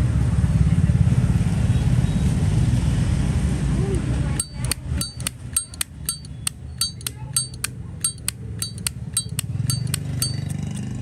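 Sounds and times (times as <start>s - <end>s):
lighter lid clicking open and shut: 4.4s - 10.5s.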